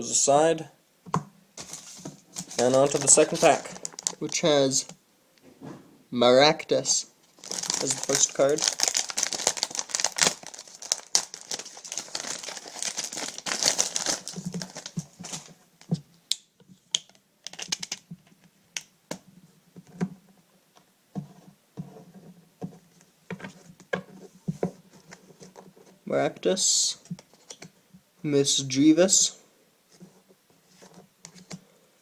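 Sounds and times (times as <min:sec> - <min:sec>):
plastic wrapping crinkling: 0:01.6 - 0:05.0, 0:07.2 - 0:15.9, 0:17.0 - 0:18.1.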